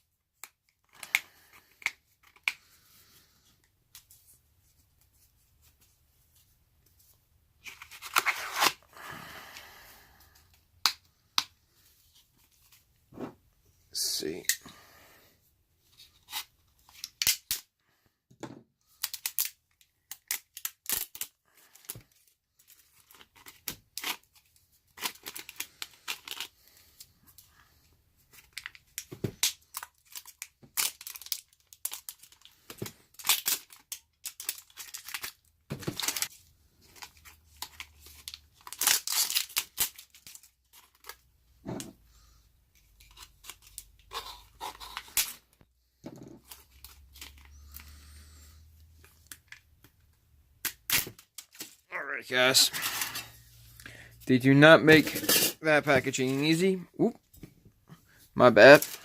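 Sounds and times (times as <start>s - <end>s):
packaging ripping and crinkling: 7.6s - 8.8s, 18.9s - 22.0s, 24.9s - 26.6s, 28.4s - 41.2s.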